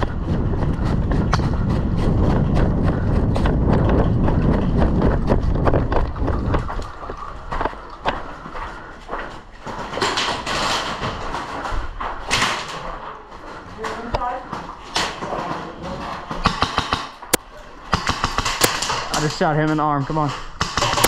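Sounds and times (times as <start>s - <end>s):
wind on microphone: 0.0s - 8.2s
gear knocking and rustling: 0.0s - 21.0s
running footsteps: 0.0s - 21.0s.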